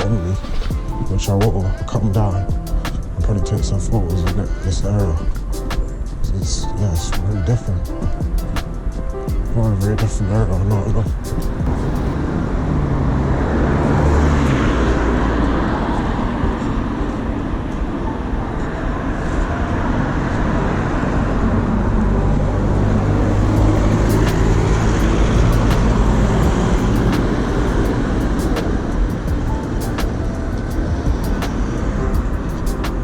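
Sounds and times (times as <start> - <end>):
cars passing: 9.6 - 33.0.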